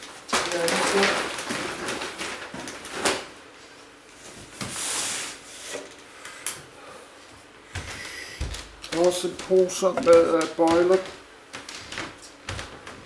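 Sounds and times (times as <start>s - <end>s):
plastic bags rustling: 0.0s - 5.4s.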